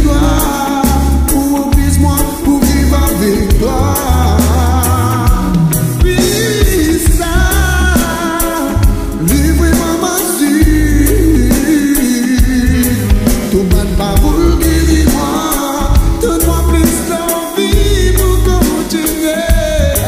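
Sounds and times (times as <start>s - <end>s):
song with lead vocal: 0.0s - 20.0s.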